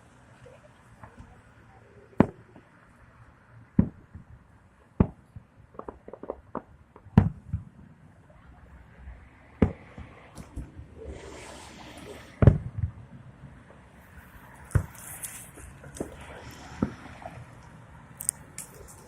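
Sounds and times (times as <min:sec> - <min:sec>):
crackling pops: 0:05.0 - 0:07.6, 0:16.8 - 0:19.0
fireworks booming: 0:05.0 - 0:07.9, 0:12.1 - 0:13.0.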